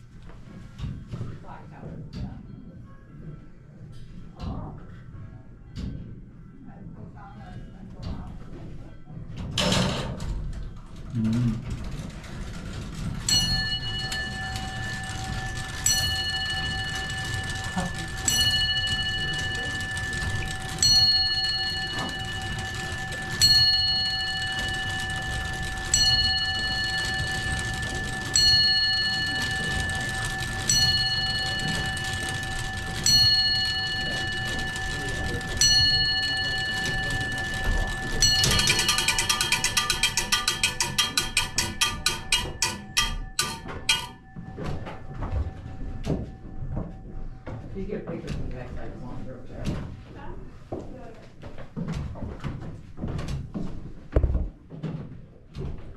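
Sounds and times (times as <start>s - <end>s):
clock tower bell striking: 11.8s - 47.7s.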